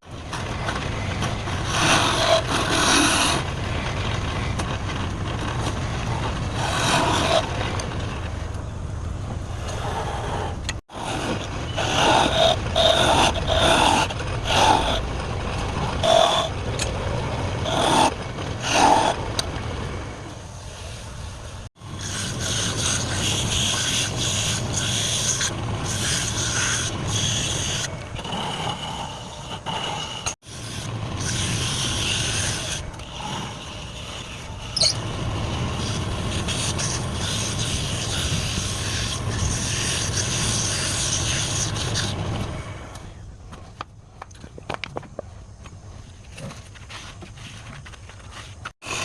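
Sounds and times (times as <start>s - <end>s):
turning tool scraping wood: 0.1s - 8.6s, 9.2s - 43.8s, 45.7s - 49.0s
wood lathe motor hum: 10.9s - 20.3s, 21.8s - 43.0s.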